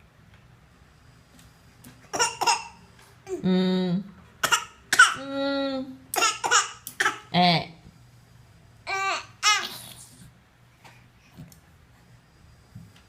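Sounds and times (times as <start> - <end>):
child fake-coughing: 2.2 - 2.8, 4.4 - 5.2, 6.2 - 7.3.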